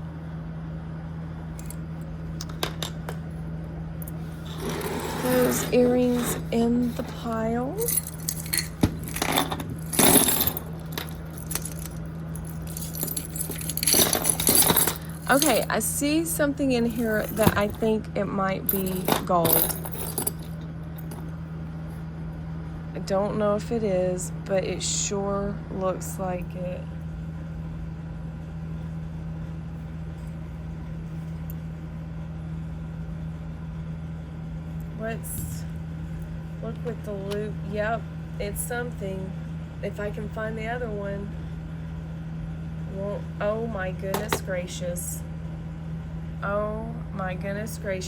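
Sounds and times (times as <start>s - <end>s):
low mechanical hum: 0.0s - 48.0s
jewelry clinking and rattling: 4.0s - 15.9s, 16.8s - 18.0s, 18.7s - 21.3s.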